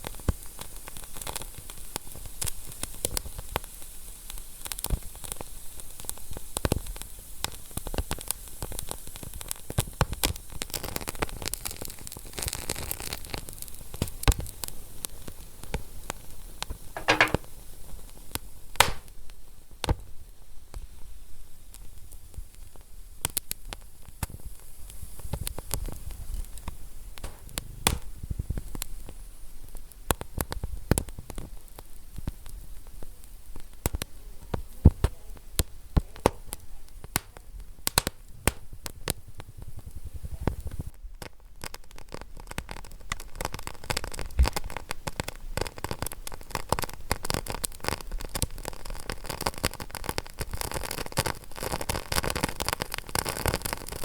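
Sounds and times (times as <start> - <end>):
wood fire crackling and popping: 0.0 - 17.5, 18.8 - 19.2, 21.7 - 54.0
low rumble of burning logs: 21.5 - 54.0.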